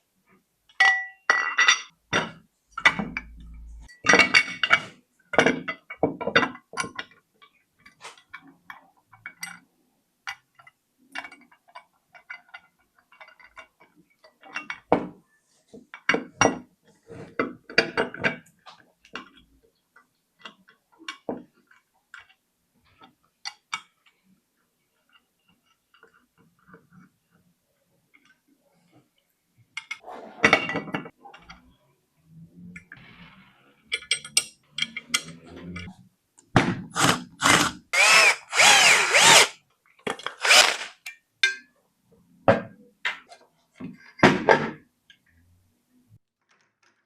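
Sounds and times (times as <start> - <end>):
metal parts clinking and knocking: 40.1 - 41.0.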